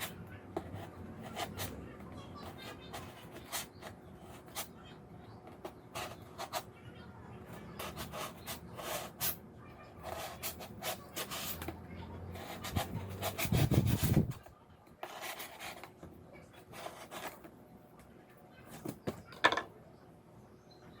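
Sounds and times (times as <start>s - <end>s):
rubbing and scraping strokes: 12.3s - 14.4s.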